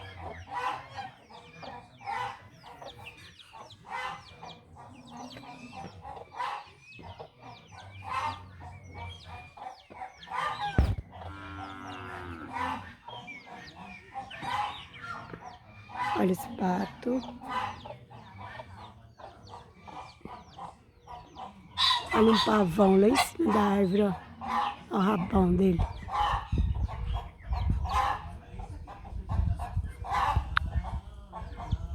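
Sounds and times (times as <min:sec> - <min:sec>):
fowl clucking: 0:00.0 - 0:31.9
small birds chirping: 0:00.0 - 0:31.9
sharp thump: 0:10.8 - 0:11.0.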